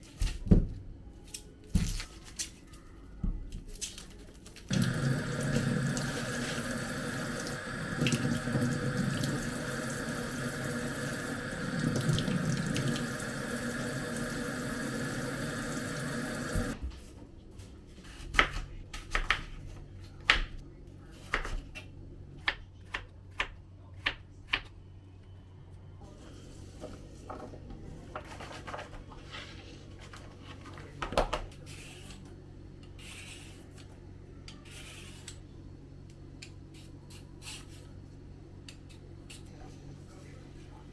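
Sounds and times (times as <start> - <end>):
tap running into sink: 4.7 - 16.8.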